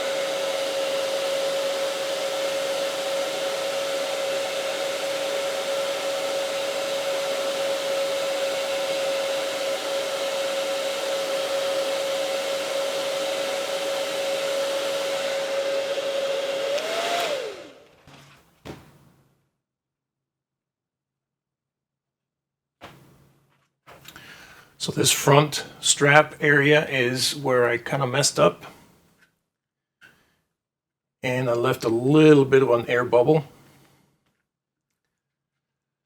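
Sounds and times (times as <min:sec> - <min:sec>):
motor spinning down: 0:00.0 - 0:17.9
hair dryer blowing: 0:00.0 - 0:18.0, 0:24.3 - 0:27.4.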